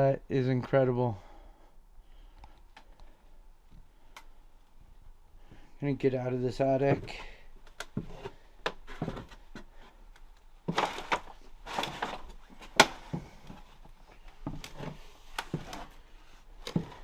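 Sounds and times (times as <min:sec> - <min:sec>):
footsteps on wooden boards: 0:06.9 - 0:10.0, 0:10.6 - 0:17.0.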